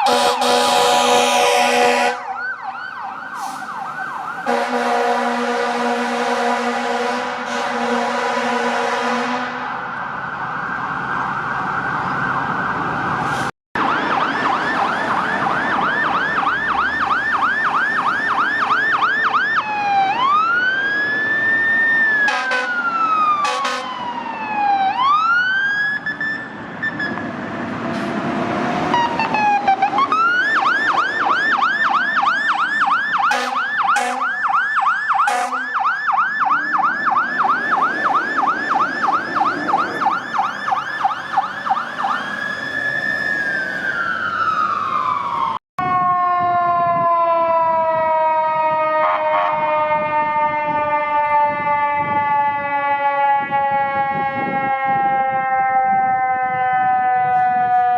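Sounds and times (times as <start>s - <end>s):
electronic siren yelping and wailing: 0.0s - 5.7s, 9.6s - 27.2s, 28.9s - 57.9s.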